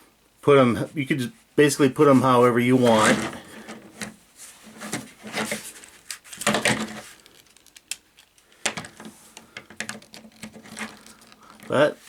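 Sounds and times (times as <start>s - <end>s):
plastic parts clicking and rustling: 2.9s - 12.0s.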